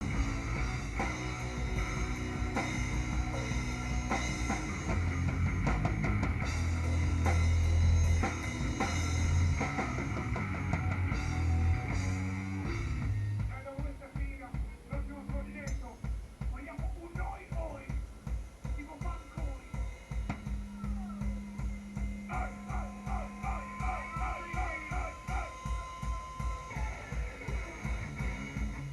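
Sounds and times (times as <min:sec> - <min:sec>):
bass guitar: 0:00.0 - 0:13.6, 0:20.3 - 0:28.9
distorted guitar: 0:00.0 - 0:28.9
drum kit: 0:00.0 - 0:28.9.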